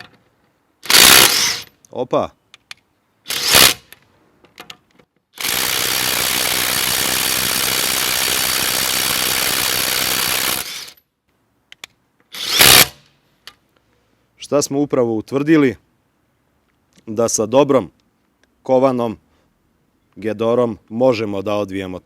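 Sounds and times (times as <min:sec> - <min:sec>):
cordless impact driver hammering: 0:00.9 - 0:01.6, 0:12.4 - 0:13.0.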